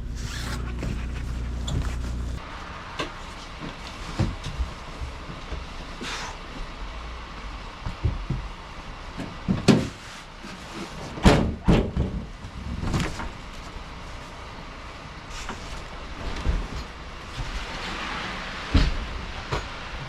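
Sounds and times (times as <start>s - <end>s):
hard knocks and thuds: 7.8s - 8.6s, 11.2s - 13.2s.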